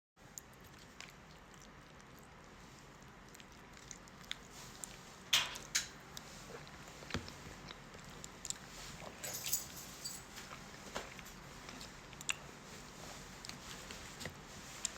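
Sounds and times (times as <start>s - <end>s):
soft chewing: 0.2s - 14.9s.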